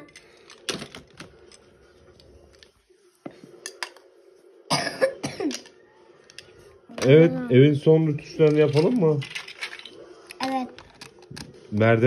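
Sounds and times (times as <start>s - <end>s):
plastic bricks clicking and clattering: 8.4s - 11.5s.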